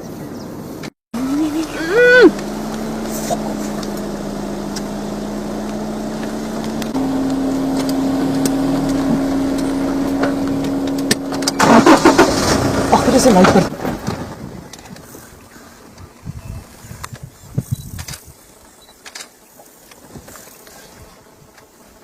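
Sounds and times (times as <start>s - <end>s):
vehicle engine humming: 1.2s - 13.7s.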